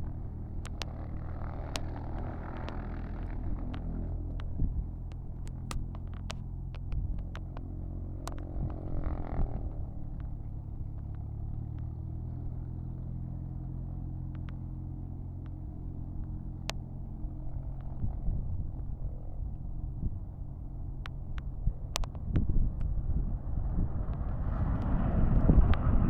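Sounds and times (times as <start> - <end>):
low engine rumble: 0.0 - 26.0
sharp clicks: 0.6 - 9.0, 14.3 - 14.6, 21.0 - 22.9.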